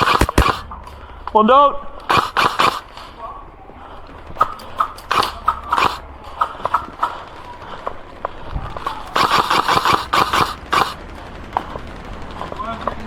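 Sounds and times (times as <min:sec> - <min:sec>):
airsoft guns firing: 0:00.0 - 0:13.0.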